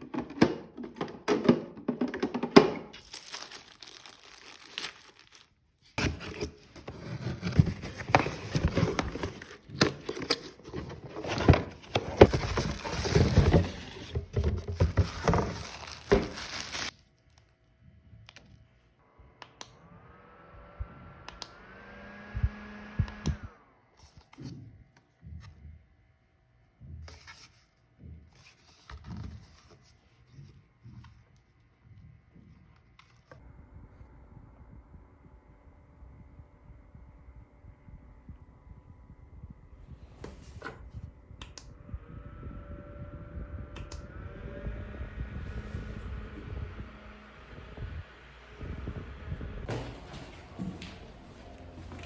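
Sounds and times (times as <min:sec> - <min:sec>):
packaging crinkling and rustling: 0:02.2 - 0:17.5
short rising whine: 0:19.0 - 0:23.9.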